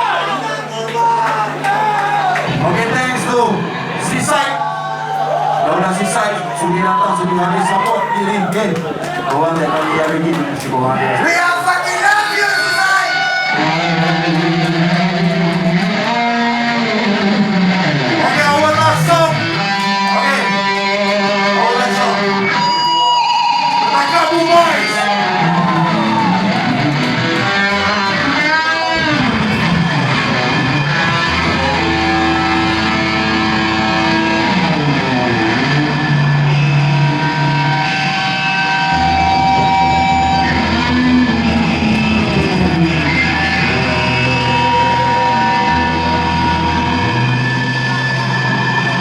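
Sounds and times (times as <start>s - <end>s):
punk band playing: 12.0s - 49.0s
bending wavering guitar notes: 13.1s - 49.0s.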